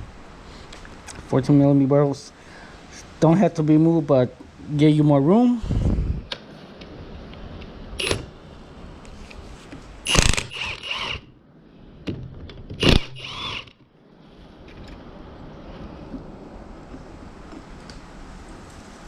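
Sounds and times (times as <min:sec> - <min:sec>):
ratchet wrench clicking: 0:10.1 - 0:11.2.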